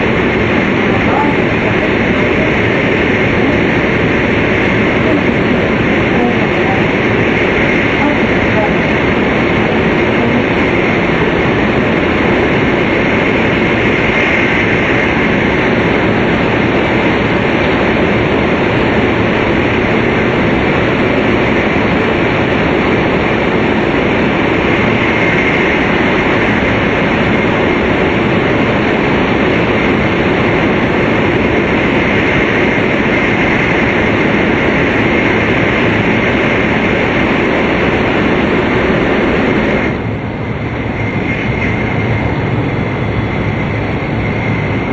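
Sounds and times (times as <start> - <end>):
faint high whine: 0.0 - 44.9
train wheel and air noise: 0.0 - 44.9.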